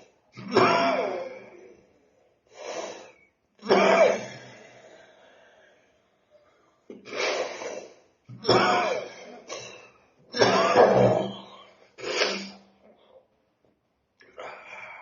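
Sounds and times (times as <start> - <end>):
person coughing: 0.4 - 1.2, 3.6 - 4.4, 8.4 - 11.4.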